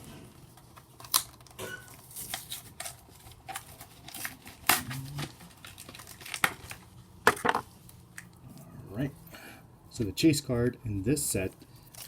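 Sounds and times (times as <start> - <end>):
foil wrapper crinkling and tearing: 0.8 - 6.9.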